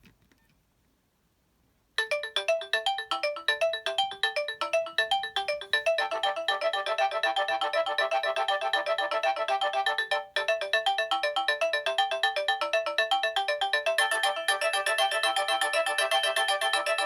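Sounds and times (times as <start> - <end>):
polyphonic phone ringtone: 2.0 - 17.0.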